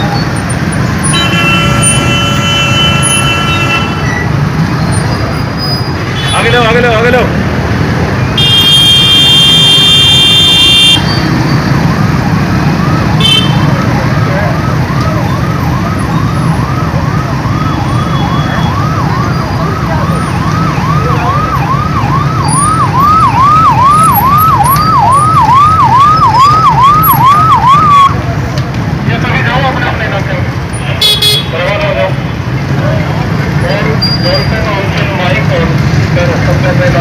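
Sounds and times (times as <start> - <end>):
traffic noise: 0.0 - 37.0
siren yelping: 8.4 - 28.2.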